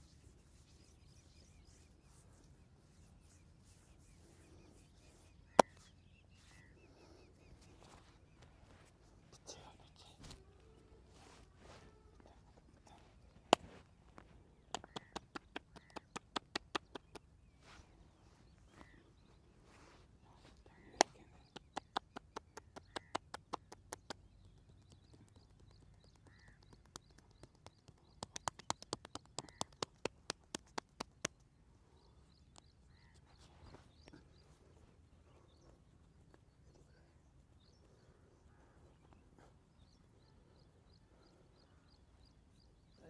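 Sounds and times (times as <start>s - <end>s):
hands clapping on body: 13.5s - 13.8s, 14.7s - 17.4s, 21.0s - 31.4s.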